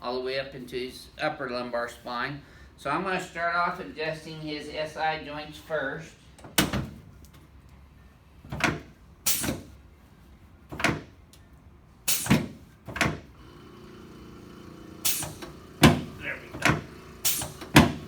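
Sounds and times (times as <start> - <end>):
sharp knocks and clunks: 10.7 - 11.1, 15.1 - 18.0.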